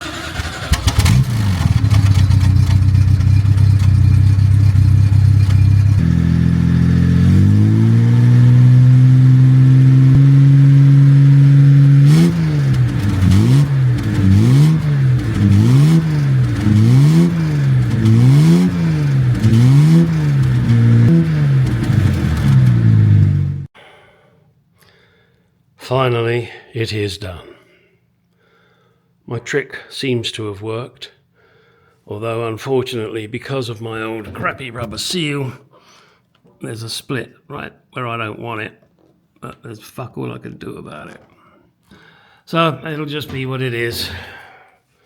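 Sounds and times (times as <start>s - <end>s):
car engine idling and revving: 0.0s - 23.7s.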